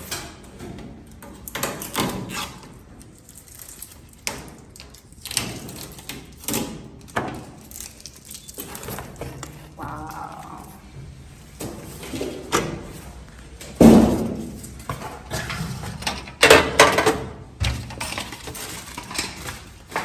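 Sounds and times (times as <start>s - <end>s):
packaging rustling and scraping: 7.3s - 9.8s, 18.0s - 20.0s.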